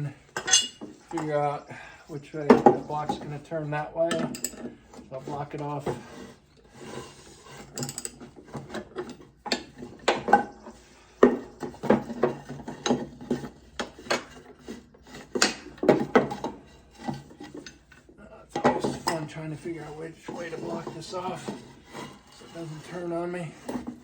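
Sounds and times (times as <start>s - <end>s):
metal mower blade clanking: 0.4s - 1.5s, 2.4s - 6.1s.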